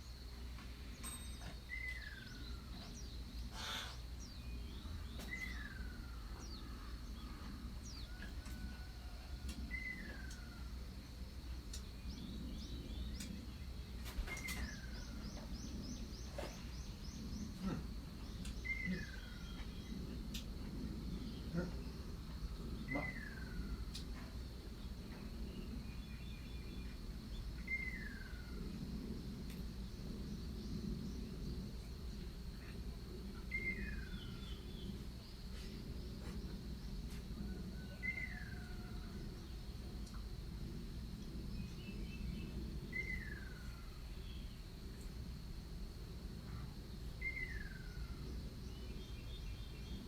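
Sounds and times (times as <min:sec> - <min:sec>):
high insect tone: 0:00.0 - 0:50.0
low background rumble: 0:00.0 - 0:50.0.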